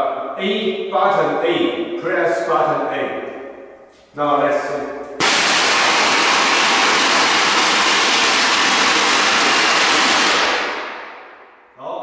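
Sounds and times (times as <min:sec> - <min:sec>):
loud rushing gas hiss: 0:05.2 - 0:11.2.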